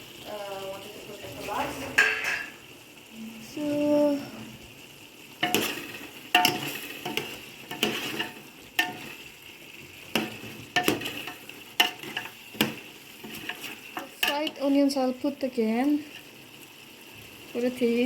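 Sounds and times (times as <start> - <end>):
food sizzling: 0.0 - 18.0
utensil scraping cooking pot: 5.4 - 16.5.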